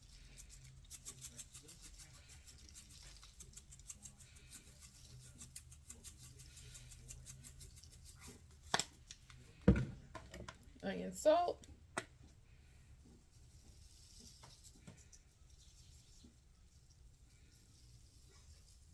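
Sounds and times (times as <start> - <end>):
seasoning shaker rattling: 0.0 - 8.8.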